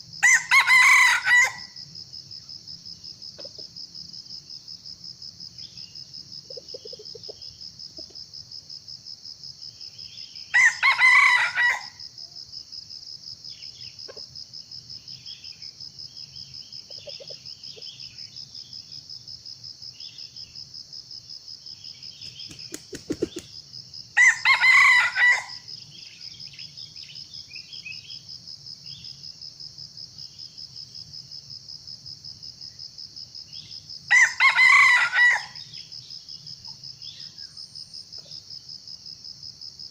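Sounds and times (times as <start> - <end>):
junglefowl crowing: 0.2 - 1.8, 10.5 - 12.0, 24.2 - 25.6, 34.1 - 35.7.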